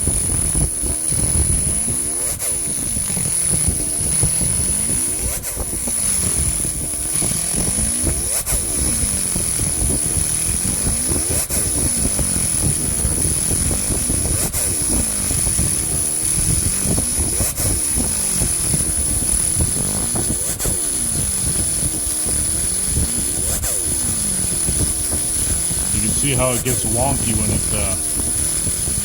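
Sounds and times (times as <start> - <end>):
laser cleaner high whine: 21.4 - 29.0.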